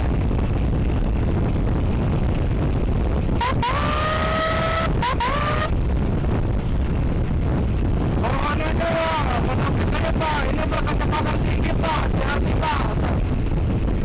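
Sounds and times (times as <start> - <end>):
motorbike road rumble: 0.0 - 14.0
wind: 0.0 - 14.0
electronic siren blips: 3.4 - 5.7.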